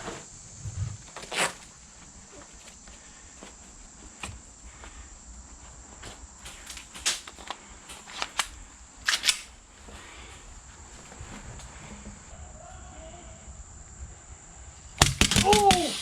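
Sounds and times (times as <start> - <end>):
airsoft guns firing: 15.0 - 16.0.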